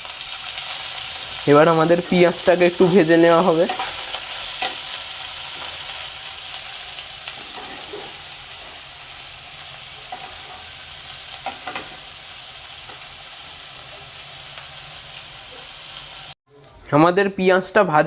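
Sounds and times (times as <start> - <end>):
onions sizzling in oil: 0.0 - 16.4.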